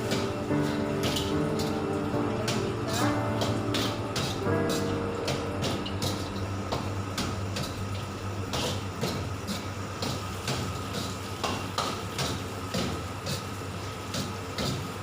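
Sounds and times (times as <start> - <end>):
steady low hum: 0.0 - 10.3.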